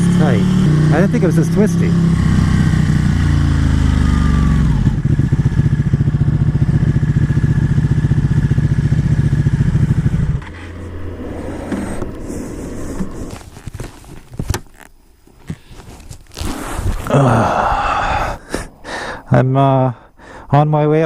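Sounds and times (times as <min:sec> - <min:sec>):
motorcycle engine running: 0:00.0 - 0:12.1.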